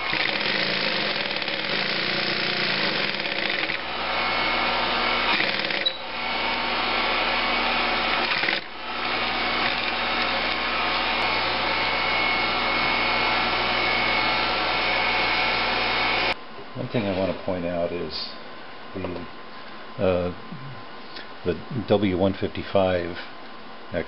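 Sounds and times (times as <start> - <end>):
sewing machine stitching: 0.0 - 3.8, 5.3 - 6.0, 8.1 - 8.6.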